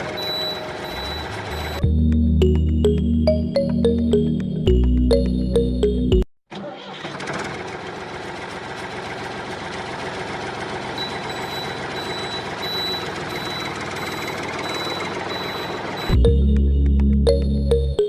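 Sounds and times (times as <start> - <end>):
reversing alarm beeping: 0.0 - 1.8, 11.0 - 16.3
vehicle engine running: 0.0 - 3.2, 7.2 - 17.4.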